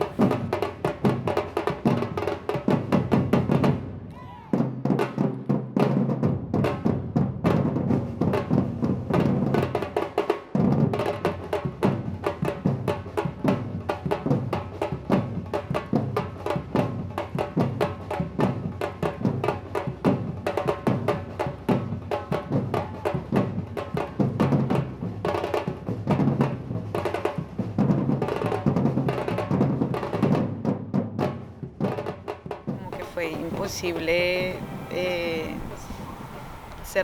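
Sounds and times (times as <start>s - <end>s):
drum ensemble playing: 0.0s - 4.0s, 32.7s - 37.0s.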